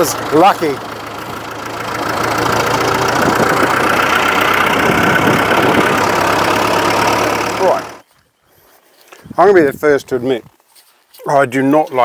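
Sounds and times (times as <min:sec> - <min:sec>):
tractor engine running: 0:00.0 - 0:08.1.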